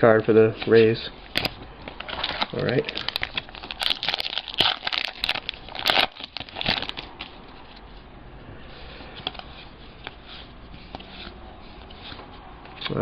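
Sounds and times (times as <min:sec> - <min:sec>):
cards rustling and clicking: 0:00.5 - 0:07.9, 0:08.8 - 0:13.0
wrapper crinkling and tearing: 0:01.4 - 0:07.4.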